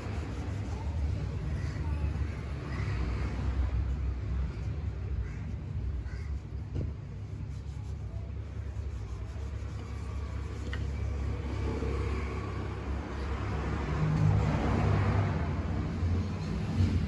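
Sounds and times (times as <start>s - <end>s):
noisy scraping haze: 0.0s - 1.6s, 6.3s - 12.4s.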